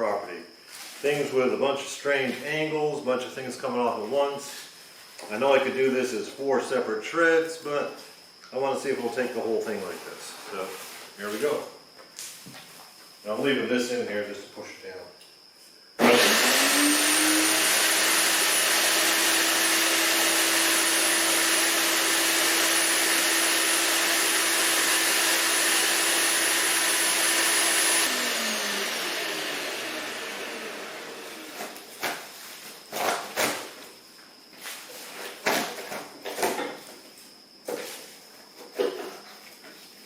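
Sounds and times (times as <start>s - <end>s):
wood chipper motor whining: 16.0s - 33.8s.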